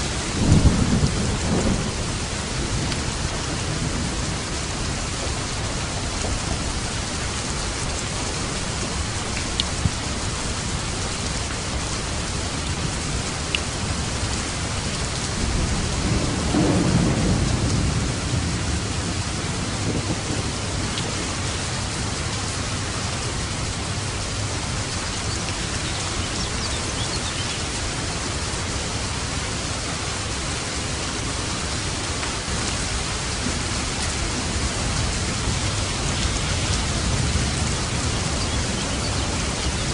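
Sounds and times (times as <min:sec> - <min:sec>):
heavy rain falling: 0:00.0 - 0:39.9
low roll of thunder: 0:00.3 - 0:06.9, 0:14.9 - 0:22.7, 0:33.4 - 0:39.9.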